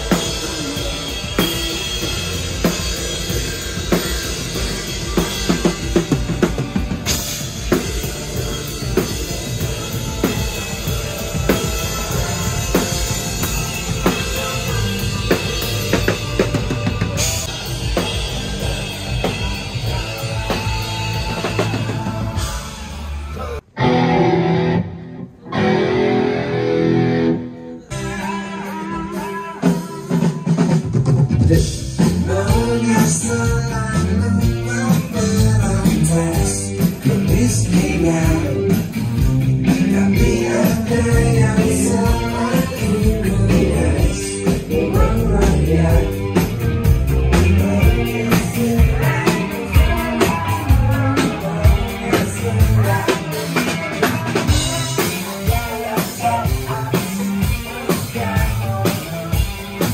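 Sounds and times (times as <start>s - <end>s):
drum kit: 0.0s - 24.8s, 27.8s - 59.9s
electric guitar: 0.0s - 59.9s
person singing: 0.0s - 59.9s.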